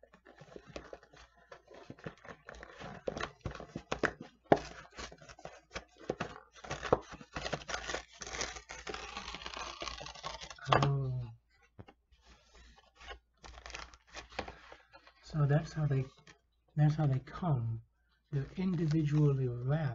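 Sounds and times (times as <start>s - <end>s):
packaging crinkling: 0.0s - 10.9s, 12.2s - 15.3s, 18.4s - 19.7s
cardboard box tearing: 0.2s - 11.0s, 12.4s - 14.5s.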